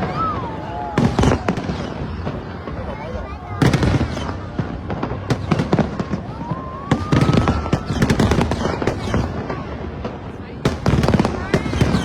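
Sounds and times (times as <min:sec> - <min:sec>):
rising firework whistle: 0:00.0 - 0:02.4, 0:05.5 - 0:09.6
fireworks cracks and bangs: 0:00.0 - 0:12.0.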